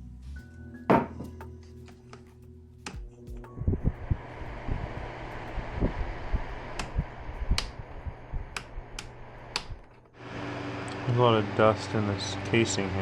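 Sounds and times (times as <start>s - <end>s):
steady low hum: 3.0s - 10.2s.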